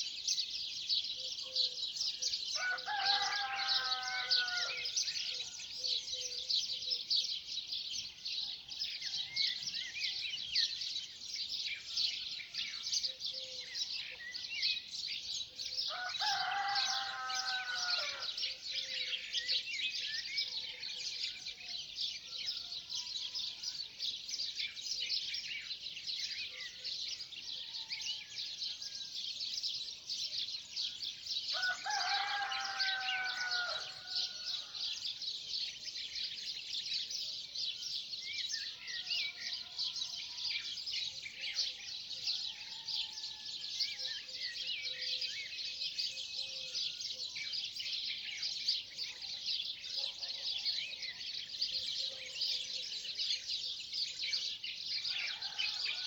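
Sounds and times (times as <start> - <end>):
small birds chirping: 0.0 - 56.0
rooster crowing: 2.6 - 5.0, 15.9 - 18.4, 31.5 - 34.8, 55.1 - 56.0.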